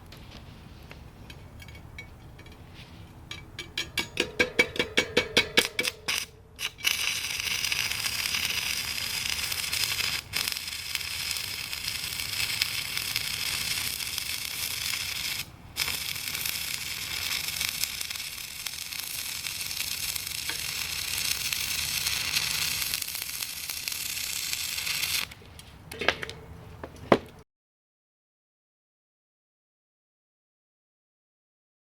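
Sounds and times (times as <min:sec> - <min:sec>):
welding arc crackling and sizzling: 0:05.6 - 0:25.4.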